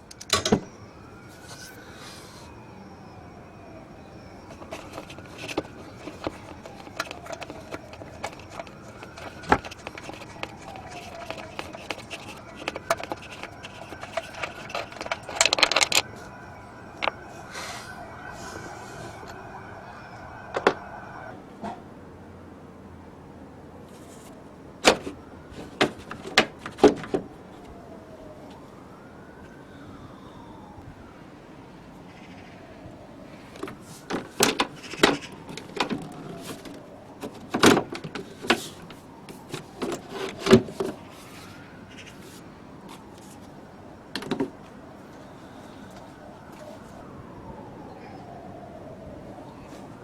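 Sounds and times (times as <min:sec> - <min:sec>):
faint whistling tone: 0:00.0 - 0:22.0, 0:27.8 - 0:31.0, 0:45.2 - 0:50.0
faint siren: 0:00.0 - 0:50.0.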